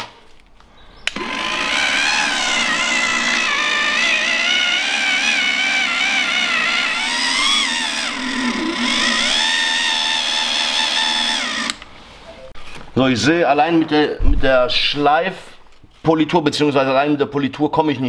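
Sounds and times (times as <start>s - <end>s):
polishing machine motor: 1.1s - 11.8s.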